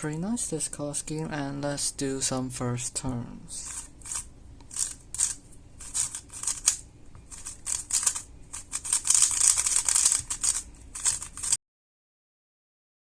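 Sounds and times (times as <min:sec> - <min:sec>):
puzzle cube turns clacking: 0:03.6 - 0:11.6.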